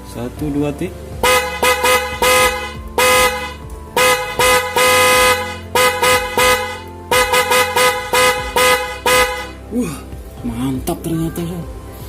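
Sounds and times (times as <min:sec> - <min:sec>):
snail horn honking: 0:01.2 - 0:09.6.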